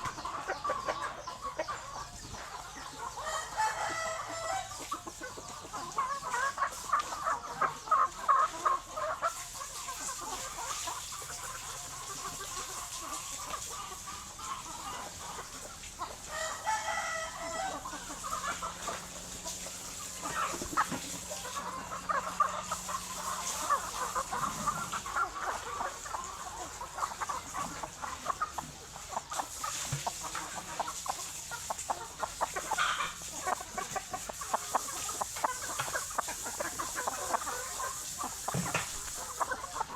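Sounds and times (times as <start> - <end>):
chickens clucking: 0.0 - 39.9
rooster crowing: 3.2 - 4.8, 16.3 - 18.1.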